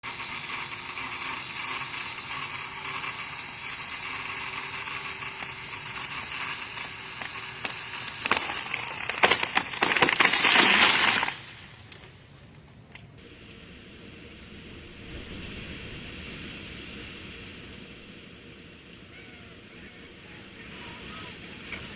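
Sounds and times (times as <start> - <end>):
tree crashing down: 0.1 - 13.0
tree cracking: 0.1 - 13.1.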